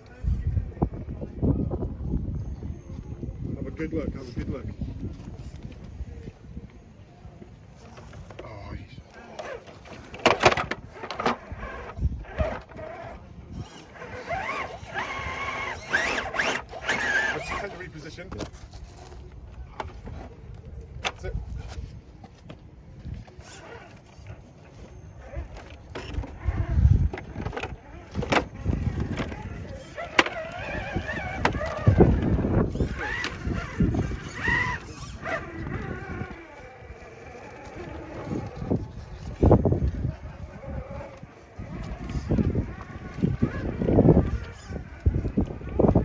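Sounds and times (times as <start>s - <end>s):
electric motor whining: 9.1s - 18.0s, 23.4s - 46.0s
rc crawler knocks: 9.4s - 17.6s, 25.3s - 38.8s.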